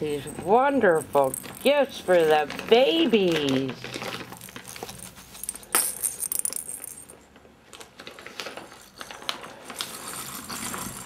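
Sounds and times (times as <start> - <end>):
cat toys jingling and rattling: 0.0 - 7.2.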